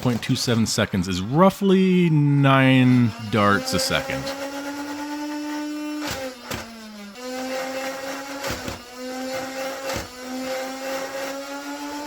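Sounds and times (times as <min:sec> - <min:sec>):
toy blaster motor whine: 0:03.1 - 0:12.0.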